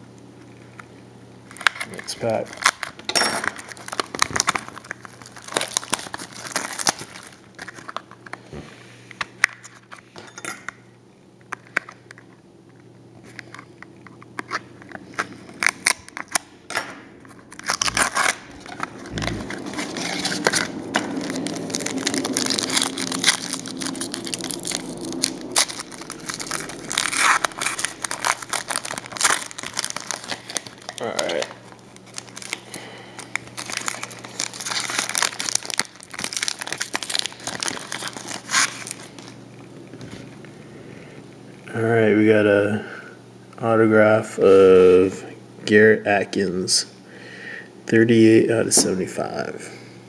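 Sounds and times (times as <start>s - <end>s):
wrapper tearing and crinkling: 1.4s - 8.5s, 14.4s - 16.5s, 17.2s - 39.4s
cards being handled: 17.2s - 39.4s.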